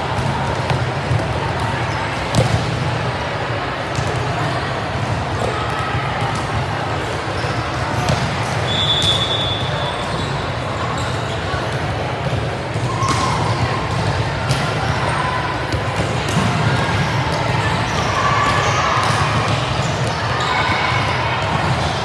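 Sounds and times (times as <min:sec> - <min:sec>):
crowd chatter: 0:00.0 - 0:22.0.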